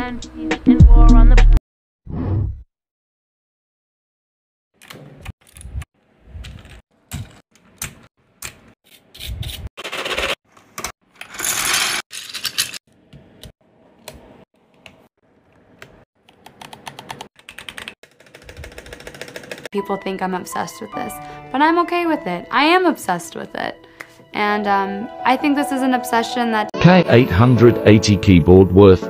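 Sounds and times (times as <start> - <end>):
mechanical keyboard typing: 16.3 - 19.7.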